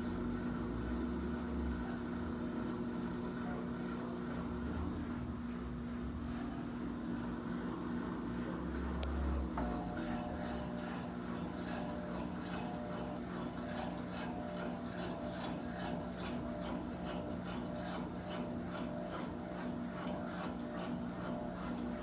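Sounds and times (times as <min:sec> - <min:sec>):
washing machine motor hum: 0:00.0 - 0:22.0.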